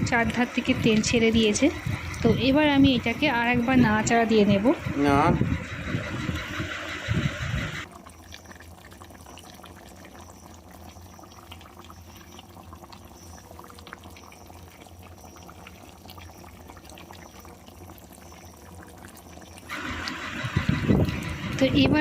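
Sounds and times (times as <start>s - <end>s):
curry sizzling and bubbling: 0.0s - 22.0s.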